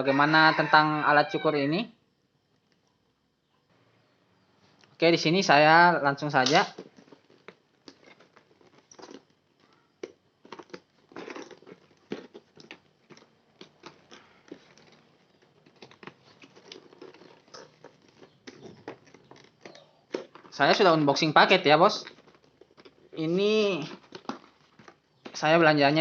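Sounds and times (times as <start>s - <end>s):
wrapping crinkling and rustling: 6.4s - 26.0s.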